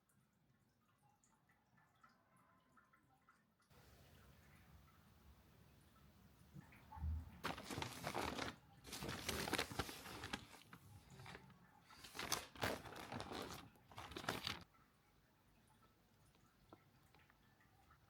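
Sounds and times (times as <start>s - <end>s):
packaging torn and crinkled: 7.4s - 14.6s.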